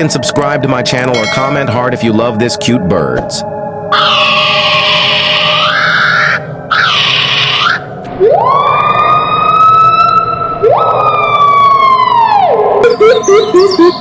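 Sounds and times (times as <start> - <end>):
siren-like wails: 3.5 - 14.0
bird hissing screech: 4.0 - 7.8.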